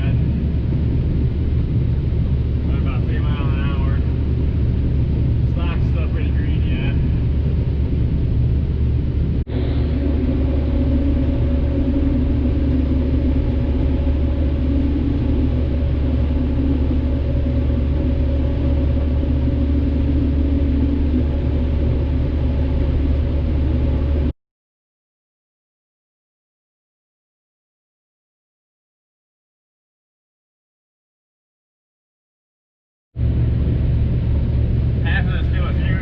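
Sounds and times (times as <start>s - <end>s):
combine harvester running: 8.6s - 24.3s, 33.3s - 36.0s.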